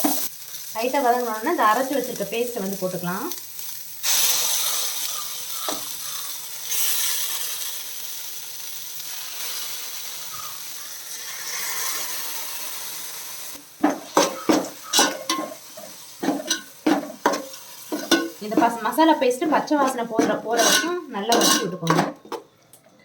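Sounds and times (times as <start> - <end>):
food sizzling in oil: 0.0 - 22.4
spoon scraping a pan: 13.8 - 22.5.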